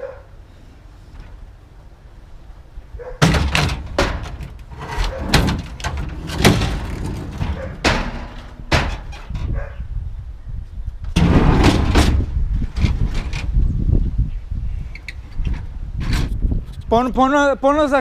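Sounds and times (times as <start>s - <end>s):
irregular bangs and clatter: 3.2s - 9.5s, 11.1s - 13.5s.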